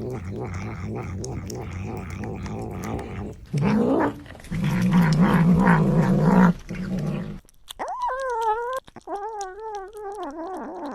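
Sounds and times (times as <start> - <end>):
cat growling while eating: 0.0 - 10.9
cat wavering calls: 7.8 - 10.9.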